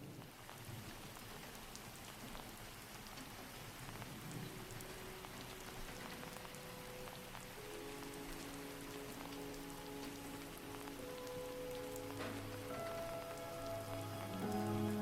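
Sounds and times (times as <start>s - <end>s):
rain patter: 0.0s - 15.0s
soft held music notes: 4.0s - 15.0s.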